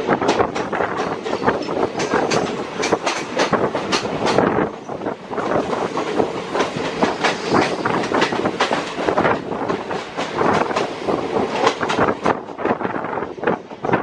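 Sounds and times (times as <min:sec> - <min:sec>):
train wheels clattering on rails: 0:00.0 - 0:14.0.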